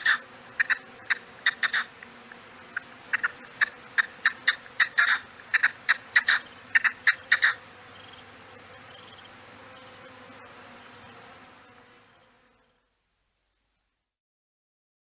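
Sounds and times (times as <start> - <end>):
game bird calling: 0.0 - 1.9, 2.8 - 8.2
faint steady background noise: 0.0 - 14.1.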